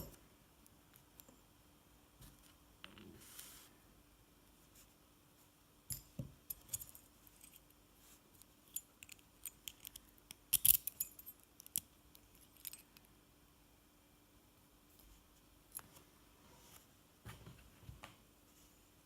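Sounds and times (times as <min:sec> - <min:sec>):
metallic clicks from padlock tools: 0:08.7 - 0:13.0.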